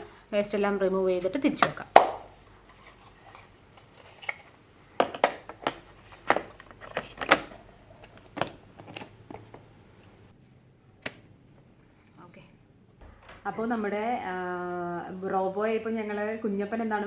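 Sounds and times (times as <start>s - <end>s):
plastic clicks and knocks: 5.0s - 9.7s.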